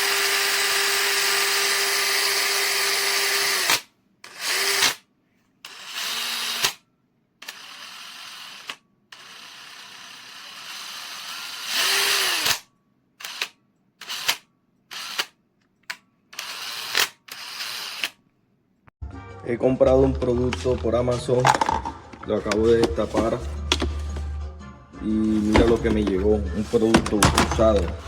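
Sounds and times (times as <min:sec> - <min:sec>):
cordless drill motor running: 0:00.0 - 0:05.0, 0:05.7 - 0:06.8, 0:07.4 - 0:12.6, 0:13.2 - 0:15.3, 0:16.4 - 0:18.2.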